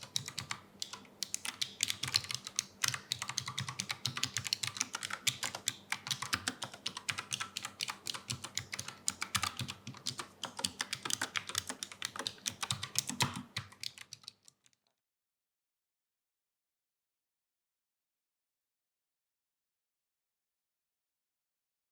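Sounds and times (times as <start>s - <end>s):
mechanical keyboard typing: 0.0s - 14.5s.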